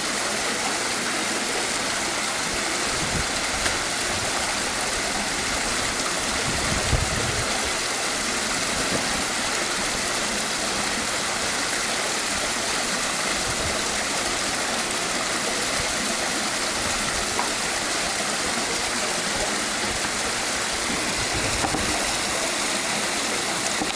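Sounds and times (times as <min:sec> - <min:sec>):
water pouring into pool: 0:00.0 - 0:23.9.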